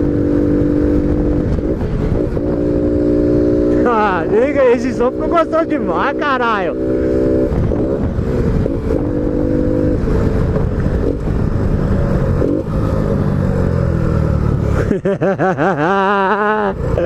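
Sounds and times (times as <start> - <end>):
wind on microphone: 0.0 - 4.8, 6.8 - 12.9
motorcycle engine accelerating: 0.0 - 17.0.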